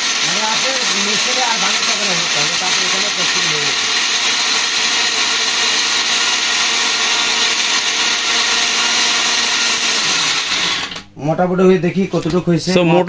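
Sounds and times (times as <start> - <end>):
blender grinding at speed: 0.0 - 11.1.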